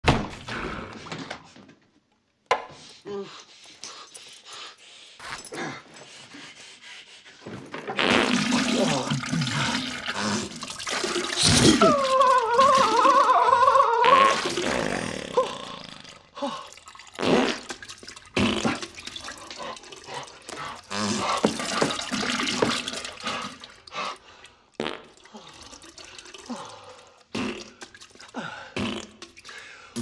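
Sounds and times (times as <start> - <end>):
short fart spurts: 7.9 - 11.9, 14.0 - 16.2, 17.2 - 19.0, 20.8 - 22.7, 24.8 - 25.1, 27.3 - 28.0, 28.8 - 29.4
gushing splattering diarrhea: 7.9 - 24.2, 24.8 - 29.6
high-pitched wavering fart: 8.0 - 10.6, 12.7 - 16.2, 17.2 - 17.8.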